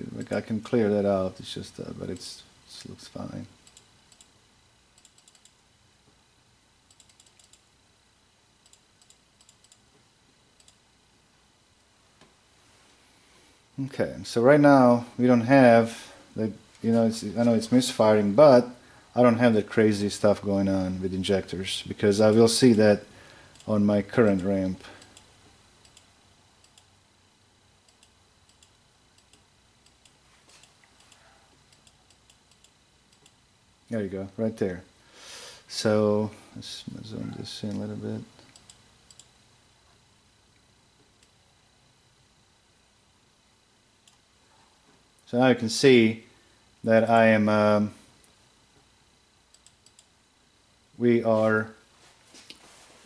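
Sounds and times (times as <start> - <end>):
faint double ticks: 25.0 - 26.9, 27.9 - 33.4, 38.4 - 39.3, 49.5 - 50.1.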